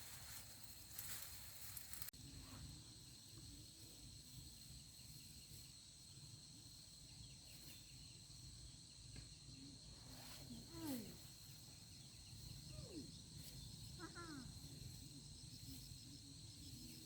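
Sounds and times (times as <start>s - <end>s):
rustling: 0.0s - 2.1s
crickets trilling: 0.0s - 17.0s.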